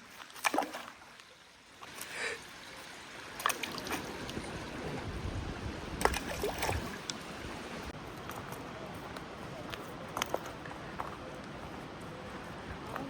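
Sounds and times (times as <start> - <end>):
wind rumble on microphone: 3.2 - 13.0
footsteps on rocky trail: 6.6 - 13.0.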